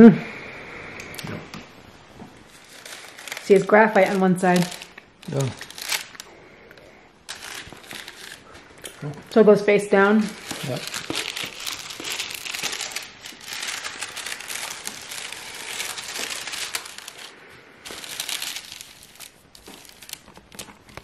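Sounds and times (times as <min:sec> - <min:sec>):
paper crinkling and rustling: 0:02.3 - 0:06.4, 0:07.3 - 0:09.2, 0:10.2 - 0:21.0.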